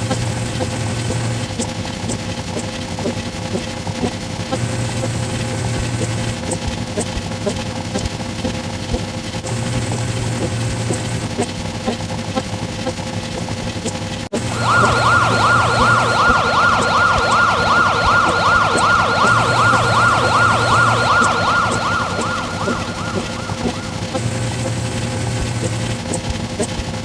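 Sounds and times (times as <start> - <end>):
engine hum: 0.0 - 27.0
electronic siren yelping: 14.4 - 24.8.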